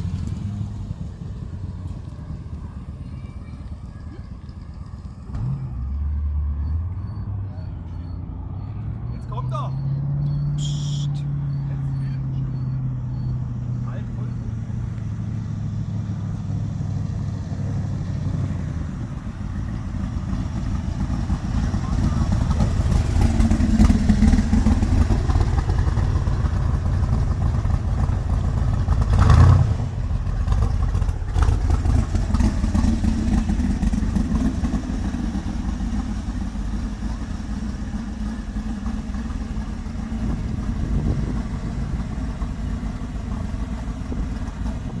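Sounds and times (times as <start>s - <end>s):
car engine rumbling past: 0.0s - 45.0s.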